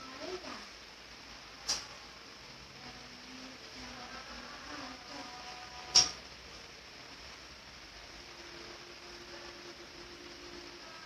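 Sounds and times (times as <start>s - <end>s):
faint steady hiss: 0.0s - 11.0s
sharp click: 1.6s - 1.9s, 5.9s - 6.2s.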